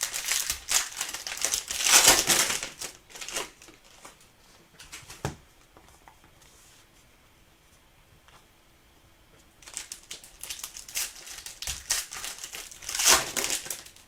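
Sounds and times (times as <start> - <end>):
wrapper tearing and crinkling: 0.0 - 4.0, 9.6 - 14.0.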